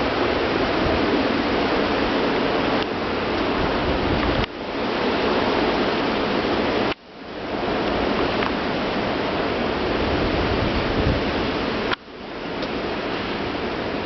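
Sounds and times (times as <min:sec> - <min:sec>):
strong wind blowing: 0:00.0 - 0:14.0.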